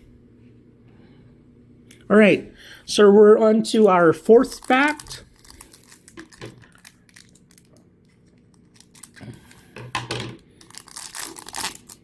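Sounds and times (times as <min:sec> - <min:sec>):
wrapper tearing and crinkling: 0:04.4 - 0:09.5, 0:10.6 - 0:12.0.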